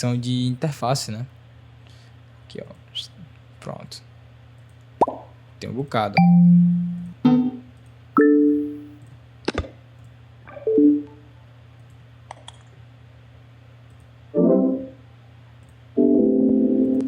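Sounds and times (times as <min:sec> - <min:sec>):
user interface blips and chimes: 0:06.2 - 0:07.6.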